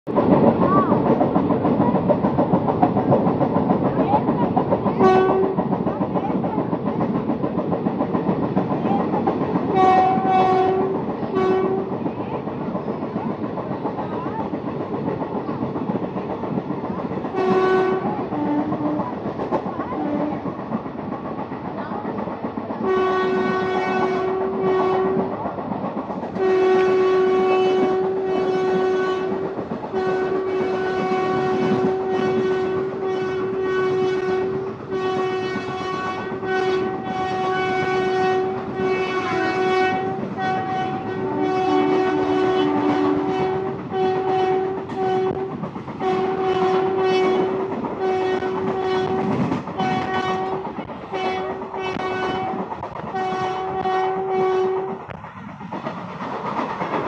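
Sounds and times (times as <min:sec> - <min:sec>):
train rumble and wheel clatter: 0:00.0 - 0:57.0
locomotive horn blasts: 0:05.0 - 0:05.6, 0:09.7 - 0:11.9, 0:17.4 - 0:19.0, 0:22.8 - 0:25.3, 0:26.4 - 0:52.6, 0:53.2 - 0:55.0.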